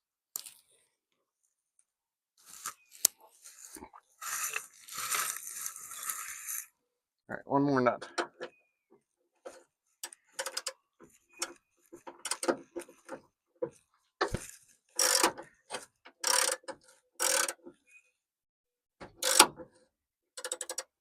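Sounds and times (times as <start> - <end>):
socket ratchet clicking: 16.2 - 16.6, 17.2 - 17.6, 19.2 - 19.5, 20.4 - 20.9.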